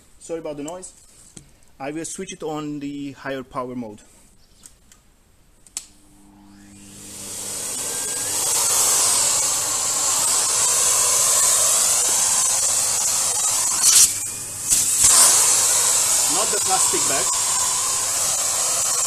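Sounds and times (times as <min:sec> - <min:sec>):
vacuum cleaner running: 0:06.0 - 0:19.0.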